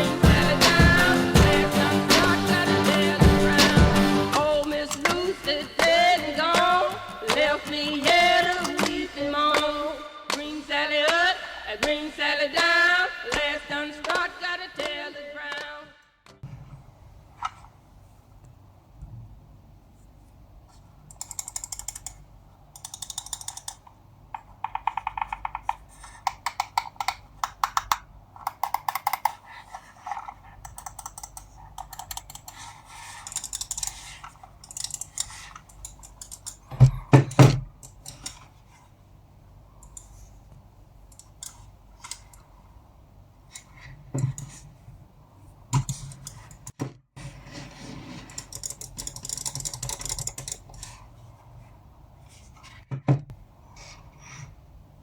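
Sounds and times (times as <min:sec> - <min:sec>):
mouse clicking: 0:21.1 - 0:22.2, 0:22.8 - 0:36.7, 0:41.1 - 0:42.5, 0:45.8 - 0:46.7, 0:48.3 - 0:51.1
scroll wheel clicks: 0:21.1 - 0:29.5, 0:30.6 - 0:36.7, 0:41.1 - 0:42.5, 0:48.3 - 0:51.0.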